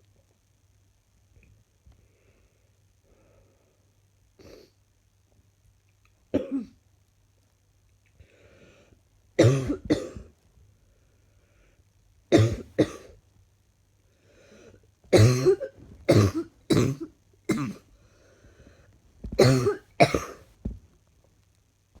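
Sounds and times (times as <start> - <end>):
woman coughing: 6.4 - 6.7, 9.4 - 10.3, 12.4 - 13.1, 15.2 - 17.8, 19.4 - 20.4.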